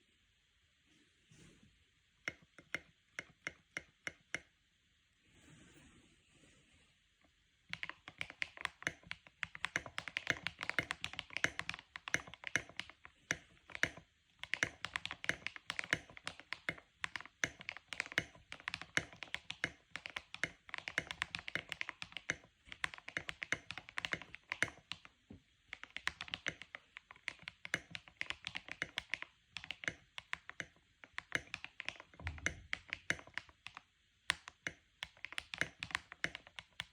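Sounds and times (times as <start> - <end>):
mechanical keyboard keystrokes: 7.7 - 25.1, 25.7 - 36.9.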